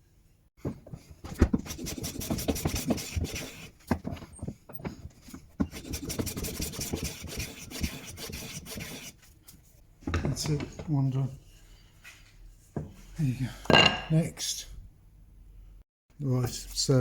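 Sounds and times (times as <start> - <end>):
hand plane rasping on wood: 1.4 - 9.3.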